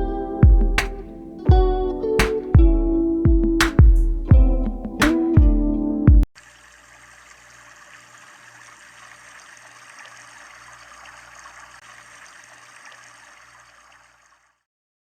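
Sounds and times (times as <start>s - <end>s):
faint trickling water: 6.4s - 14.7s.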